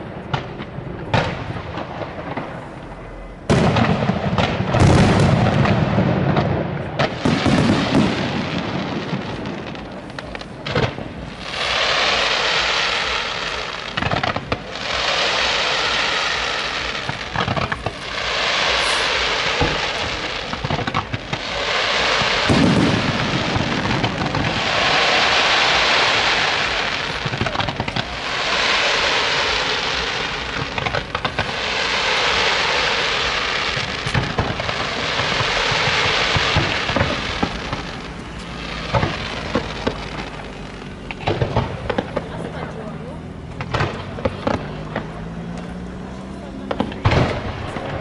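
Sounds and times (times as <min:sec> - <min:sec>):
fireworks crackling hiss: 0:00.0 - 0:48.0
sharp firework pops: 0:00.2 - 0:02.9, 0:03.5 - 0:42.6, 0:43.5 - 0:45.8, 0:46.6 - 0:48.0
low firework bang: 0:15.9 - 0:40.4, 0:46.7 - 0:48.0.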